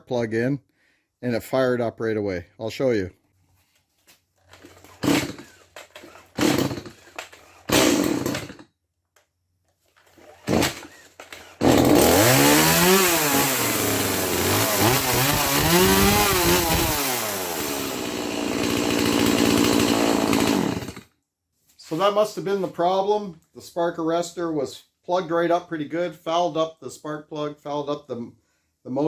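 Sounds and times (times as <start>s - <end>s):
chainsaw pull cord: 4.4s - 8.7s, 10.0s - 21.1s
chainsaw engine revving and idling: 4.6s - 8.6s, 10.2s - 21.1s.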